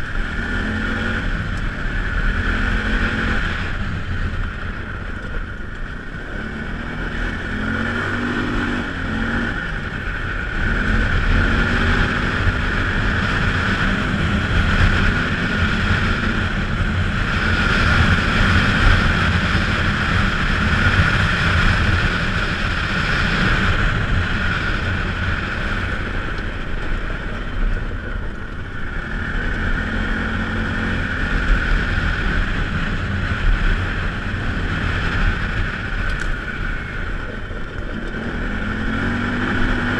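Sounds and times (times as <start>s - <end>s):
engine revving: 0.0s - 39.9s.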